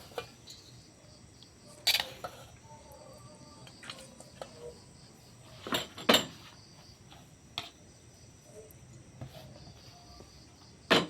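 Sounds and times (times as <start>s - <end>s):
pot and utensils clattering: 5.4s - 6.5s.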